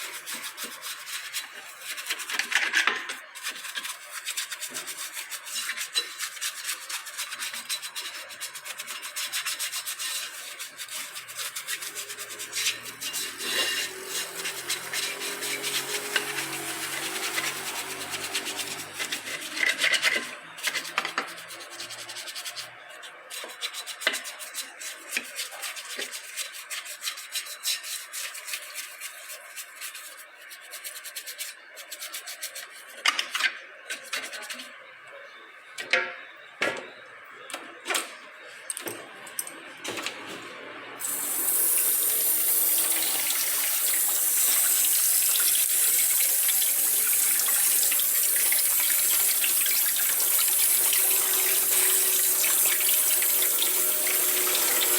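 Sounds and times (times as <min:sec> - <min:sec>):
scraping on metal brake parts: 0:09.9 - 0:25.4
spray hissing: 0:12.1 - 0:19.1, 0:41.0 - 0:54.9.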